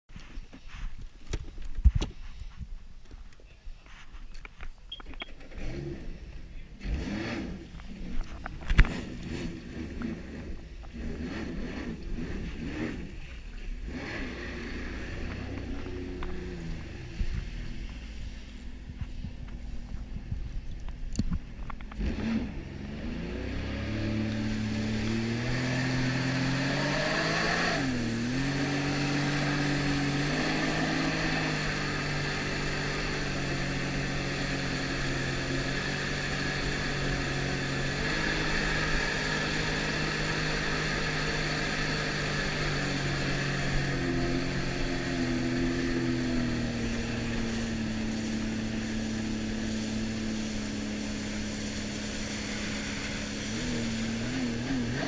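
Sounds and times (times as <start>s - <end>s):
jet ski engine revving: 5.4s - 55.0s
constant hiss: 11.9s - 55.0s.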